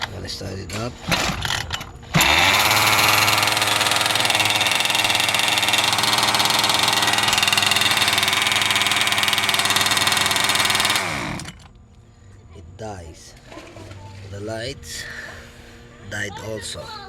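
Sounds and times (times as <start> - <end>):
model engine idling: 2.2 - 11.7.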